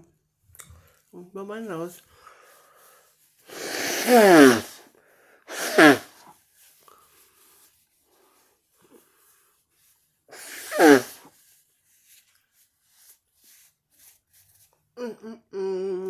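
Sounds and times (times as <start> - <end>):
person blowing nose: 2.5 - 6.4, 10.3 - 11.5.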